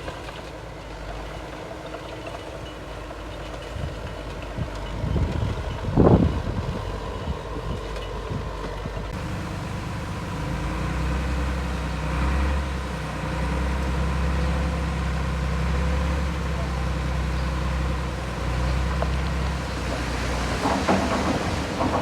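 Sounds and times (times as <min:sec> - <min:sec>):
heavy diesel machinery running: 0:00.0 - 0:22.0
loud knock: 0:20.0 - 0:22.0.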